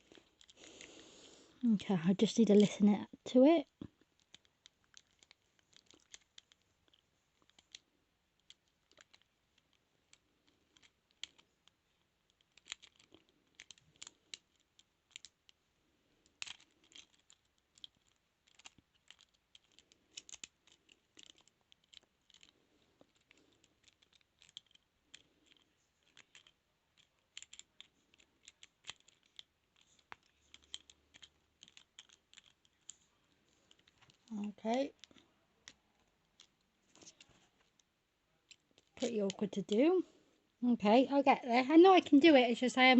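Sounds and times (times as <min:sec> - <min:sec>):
lock pick clicking and scratching: 0:04.0 - 0:15.6, 0:16.2 - 0:37.9.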